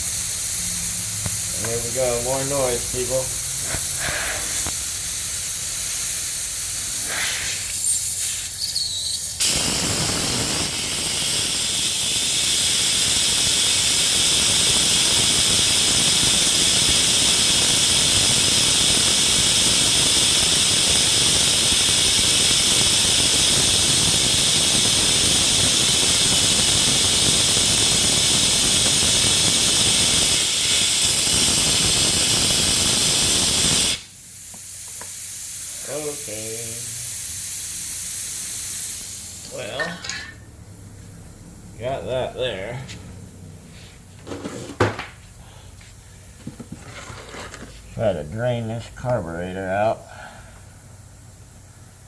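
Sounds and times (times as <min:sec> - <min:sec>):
loud rushing hiss: 0:00.0 - 0:08.6, 0:09.2 - 0:39.8.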